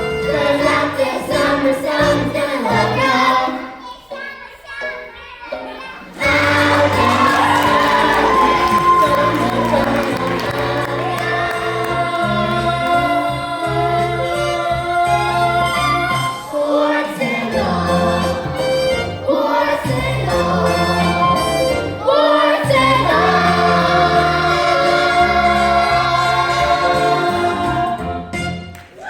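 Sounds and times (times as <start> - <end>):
musical theatre singing: 0.0 - 29.0
bass line: 6.2 - 16.5, 17.6 - 22.1, 22.7 - 28.8.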